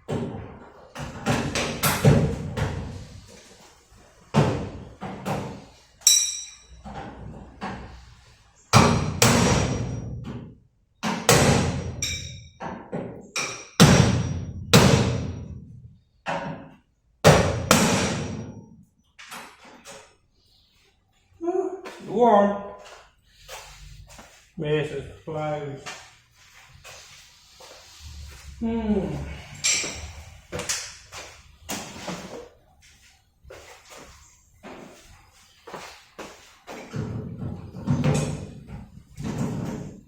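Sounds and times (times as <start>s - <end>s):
hammer striking metal: 6.0s - 6.7s, 11.3s - 12.5s, 17.3s - 18.6s.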